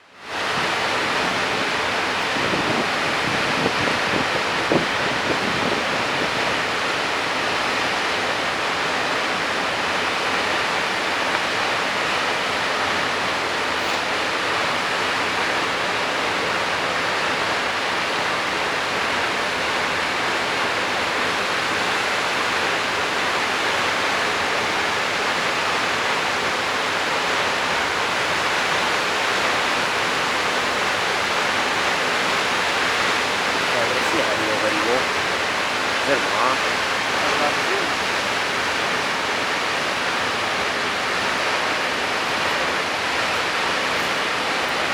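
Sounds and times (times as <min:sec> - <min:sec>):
waterfall rushing: 0:00.0 - 0:44.9.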